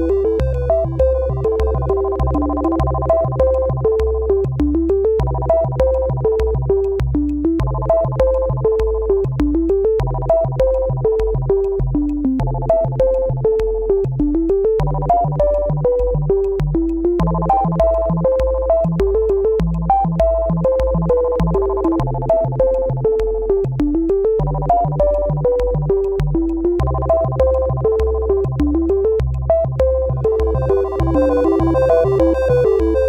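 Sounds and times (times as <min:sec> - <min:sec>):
upbeat synthesizer music: 0:00.0 - 0:04.3, 0:29.8 - 0:33.0.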